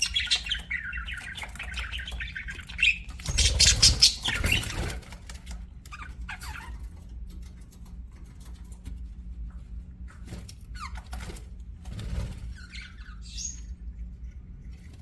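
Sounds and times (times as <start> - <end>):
budgerigars chirping: 0.0 - 6.9, 12.5 - 13.8.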